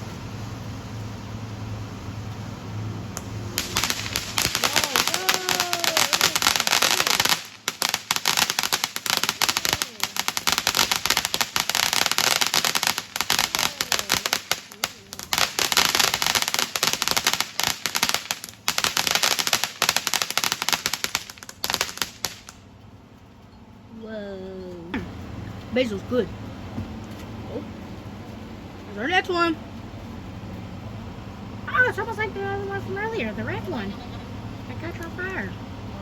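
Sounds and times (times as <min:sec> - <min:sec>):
firework crackling pops: 0:03.1 - 0:22.6
hiss of sparks: 0:03.3 - 0:22.6.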